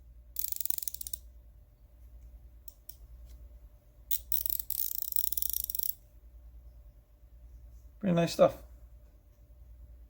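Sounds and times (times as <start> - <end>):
ratchet clicking: 0.4 - 1.2, 4.1 - 6.0.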